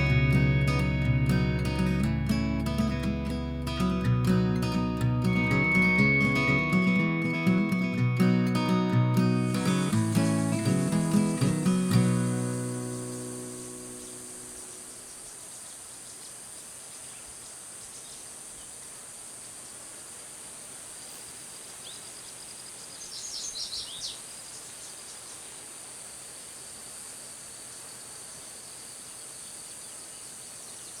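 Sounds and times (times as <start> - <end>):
insect drone: 0.0 - 31.0
bird chirps: 9.4 - 18.8, 21.0 - 25.7.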